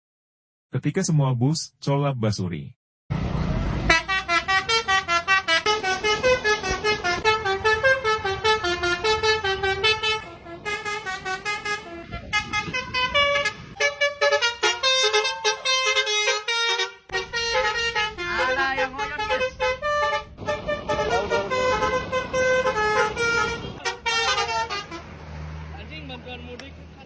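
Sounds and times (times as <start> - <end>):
musical bus horn tune: 3.7 - 25.2.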